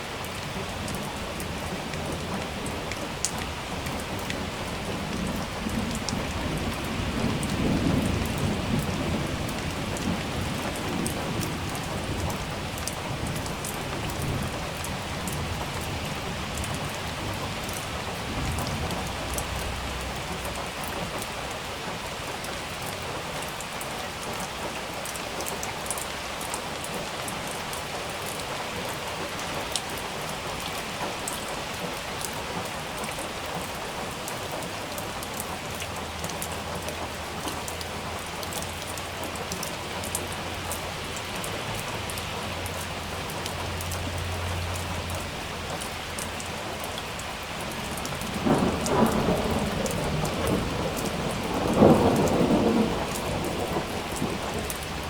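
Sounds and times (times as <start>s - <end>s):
close raindrop ticks: 0.0s - 55.0s
heavy rain: 0.0s - 55.0s
thunder rolling: 48.2s - 55.0s.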